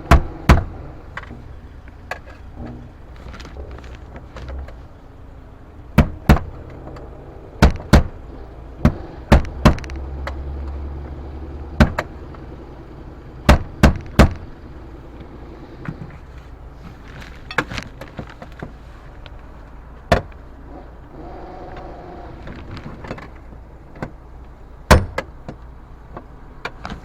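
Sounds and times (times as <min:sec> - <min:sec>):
low hum: 0:00.0 - 0:17.6
sharp knocks: 0:06.0 - 0:06.6, 0:07.6 - 0:08.2, 0:13.5 - 0:14.5, 0:24.9 - 0:25.6.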